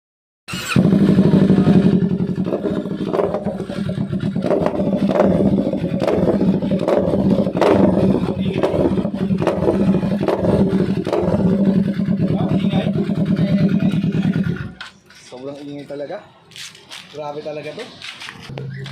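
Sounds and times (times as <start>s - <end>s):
motorcycle engine running: 0.5s - 14.9s.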